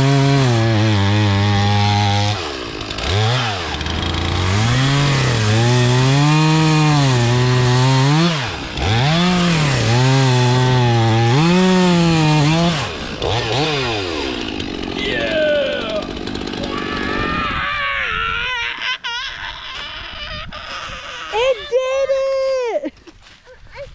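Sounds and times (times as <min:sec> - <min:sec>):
chainsaw cutting at high revs: 0:00.0 - 0:17.9.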